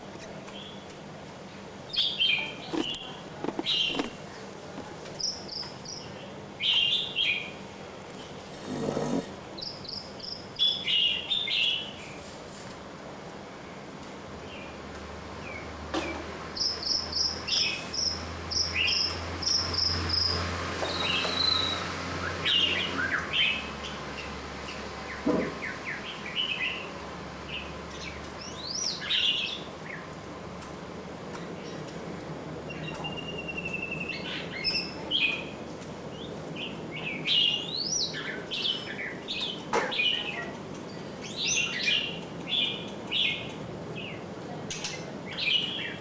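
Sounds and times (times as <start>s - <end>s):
small birds chirping: 0.2s - 12.3s, 16.6s - 30.2s, 32.6s - 46.0s.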